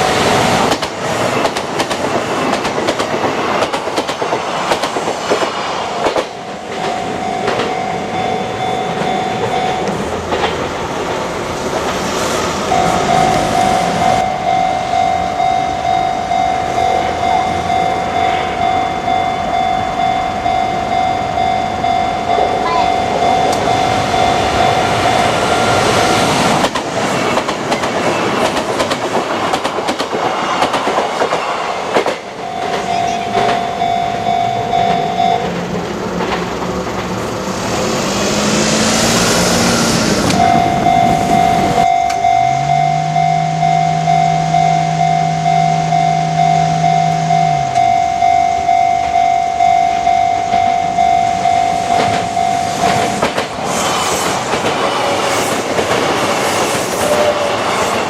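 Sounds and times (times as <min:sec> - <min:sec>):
train wheels clattering: 0:00.1 - 0:08.3, 0:08.9 - 0:14.2, 0:23.4 - 0:33.9, 0:34.7 - 0:37.8, 0:51.4 - 0:58.0
level crossing electronic bell: 0:06.4 - 0:10.0, 0:12.7 - 0:25.9, 0:32.4 - 0:35.6, 0:40.4 - 0:53.1.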